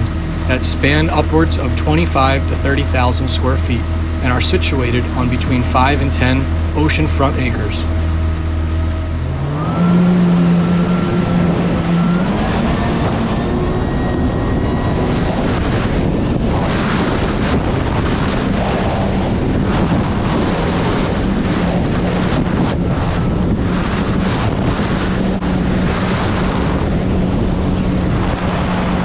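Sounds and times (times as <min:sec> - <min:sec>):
jet ski engine revving: 0:00.0 - 0:29.0
wind on microphone: 0:07.9 - 0:29.0.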